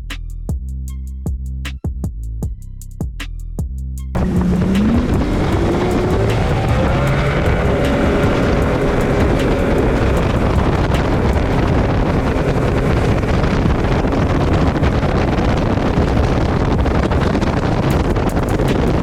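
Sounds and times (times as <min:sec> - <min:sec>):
wind buffeting microphone: 0:04.2 - 0:19.0.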